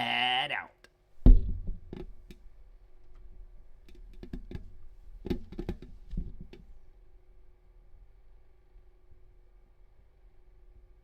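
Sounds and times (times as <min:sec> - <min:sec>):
faint steady hum: 0:00.0 - 0:11.0
heavy thump: 0:01.2 - 0:02.1.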